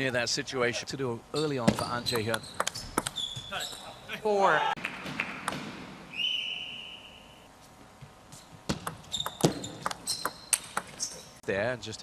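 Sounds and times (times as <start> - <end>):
table tennis ball clicking: 2.2 - 3.2.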